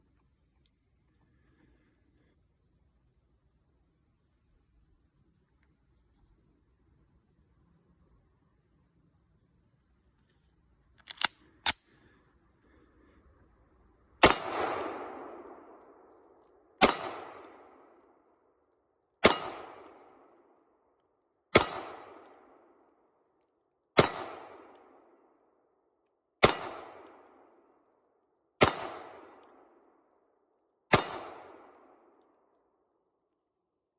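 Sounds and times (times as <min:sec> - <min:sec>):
pistol shots with echo: 0:14.2 - 0:16.1, 0:16.8 - 0:17.9, 0:19.2 - 0:20.3, 0:21.5 - 0:22.6, 0:24.0 - 0:25.0, 0:26.4 - 0:27.4, 0:28.6 - 0:29.7, 0:30.9 - 0:32.1.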